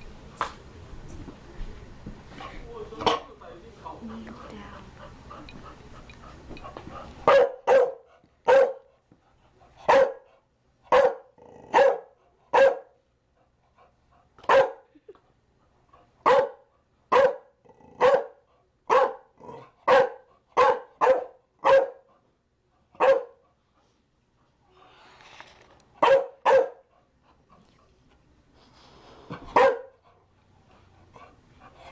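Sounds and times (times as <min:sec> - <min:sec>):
dog barking: 0:07.2 - 0:08.9, 0:09.9 - 0:10.3, 0:10.9 - 0:13.0, 0:14.5 - 0:14.8, 0:16.2 - 0:22.1, 0:23.0 - 0:23.4, 0:26.0 - 0:26.9, 0:29.5 - 0:30.0.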